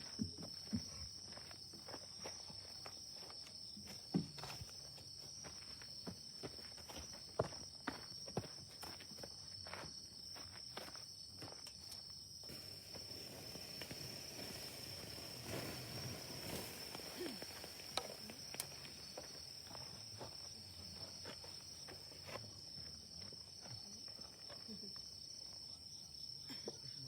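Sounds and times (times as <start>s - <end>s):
small clicks and crackles: 11.6s - 19.4s.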